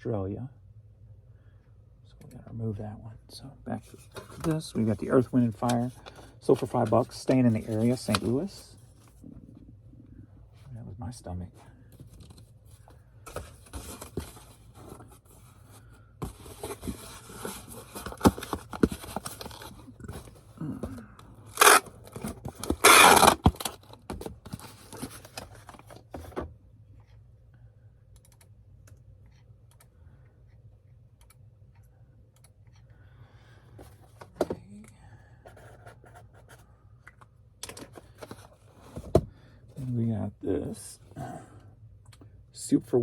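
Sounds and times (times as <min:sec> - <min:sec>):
packaging rustling and scraping: 0:03.8 - 0:09.2, 0:12.0 - 0:26.4
loud packaging rips: 0:21.5 - 0:23.8.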